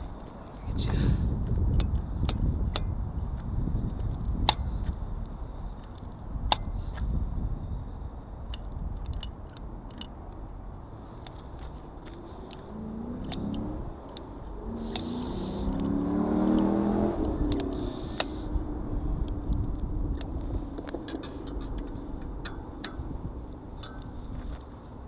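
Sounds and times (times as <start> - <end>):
low rumble: 0.0 - 25.0
small metallic clicks: 5.8 - 7.2, 8.4 - 10.5, 11.1 - 18.5, 19.2 - 24.8
vehicle engine accelerating past: 12.2 - 19.4.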